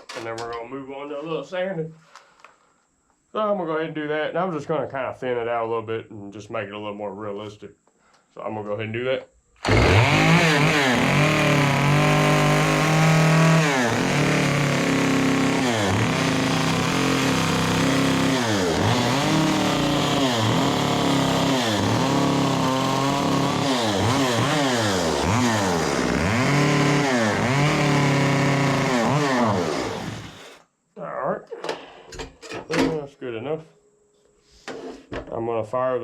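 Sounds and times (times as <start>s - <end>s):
chainsaw revving and cutting: 9.6s - 30.6s.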